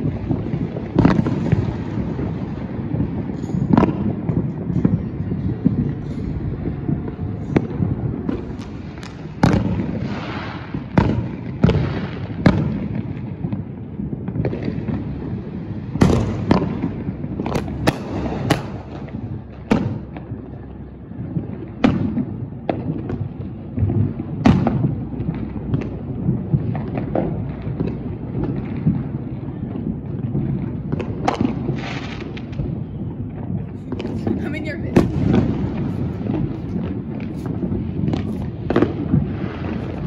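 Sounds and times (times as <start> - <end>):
low rumble: 0.0 - 10.0
fireworks bangs and cracks: 0.0 - 40.0.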